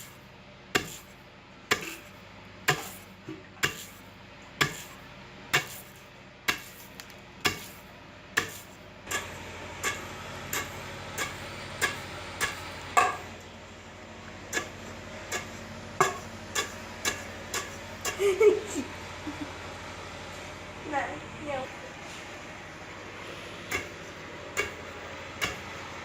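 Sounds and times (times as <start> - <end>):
low hum: 8.0 - 26.0.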